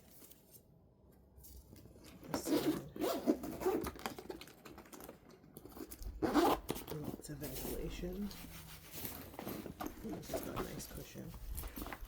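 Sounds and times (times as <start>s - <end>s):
zipper rasping: 2.4s - 4.1s, 5.8s - 7.2s.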